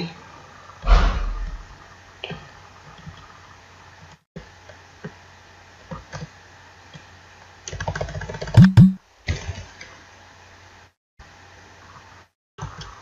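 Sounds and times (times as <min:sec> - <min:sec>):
loud low thumps: 0:00.8 - 0:01.8
steady low hum: 0:00.8 - 0:02.1.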